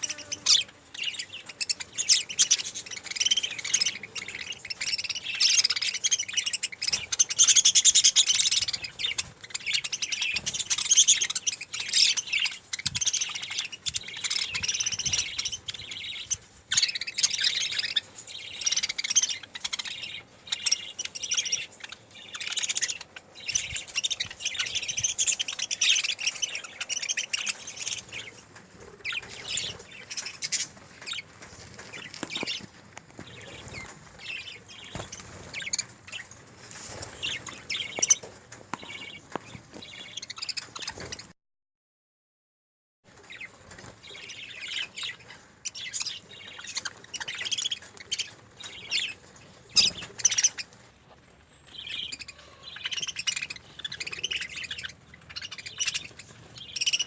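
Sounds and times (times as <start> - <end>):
budgerigars chirping: 0.0 - 36.4, 37.0 - 41.3, 43.2 - 50.8, 51.4 - 57.0.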